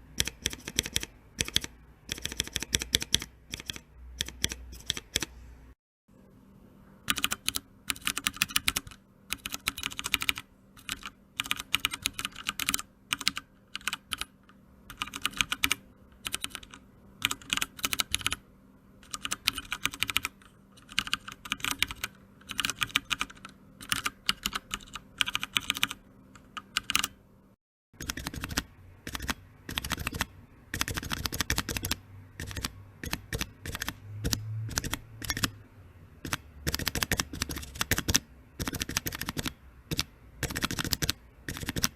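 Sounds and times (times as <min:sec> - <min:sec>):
mechanical keyboard typing: 0:00.1 - 0:05.3, 0:07.1 - 0:18.4, 0:19.0 - 0:27.2, 0:28.0 - 0:35.6, 0:36.2 - 0:41.9.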